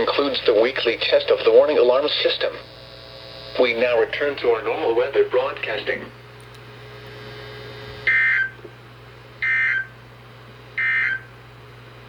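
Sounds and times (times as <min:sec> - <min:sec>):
steady low hum: 0:00.0 - 0:12.0
alert data tone bursts: 0:08.1 - 0:08.6, 0:09.4 - 0:09.9, 0:10.8 - 0:11.3.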